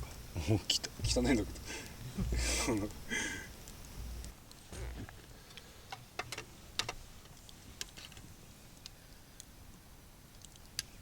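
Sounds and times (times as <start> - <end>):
light clicks and ticks: 10.3 - 11.0.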